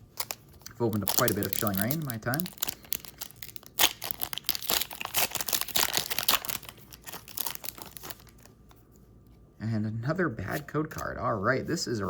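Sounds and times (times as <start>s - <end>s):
foil wrapper crinkling as torn: 0.0s - 8.5s.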